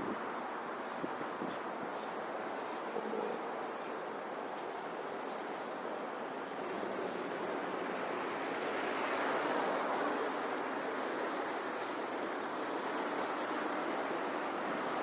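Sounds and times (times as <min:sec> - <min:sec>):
rushing outdoor noise: 0:00.0 - 0:15.0.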